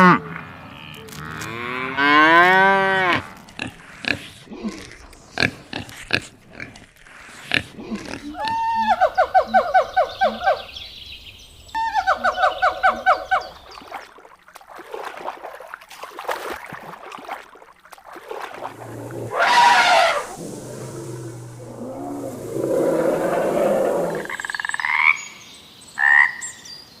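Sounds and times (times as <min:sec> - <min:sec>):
loud harsh bird call: 0:18.8 - 0:24.6.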